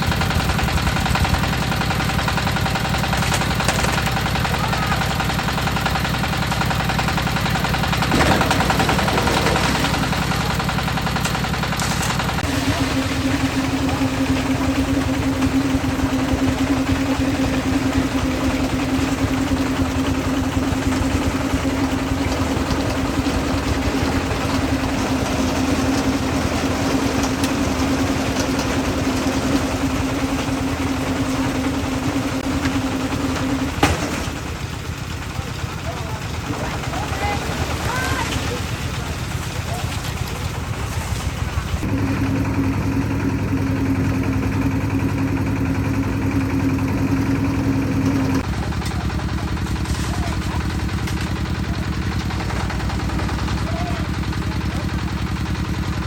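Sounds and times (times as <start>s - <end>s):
concrete mixer engine humming: 0.0s - 56.0s.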